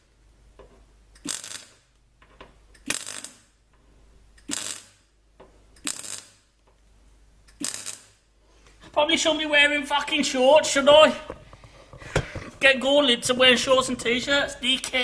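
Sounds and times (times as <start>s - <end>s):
welding arc crackling: 1.2s - 2.0s, 2.7s - 3.6s, 4.4s - 5.1s, 5.8s - 6.5s, 7.5s - 8.2s.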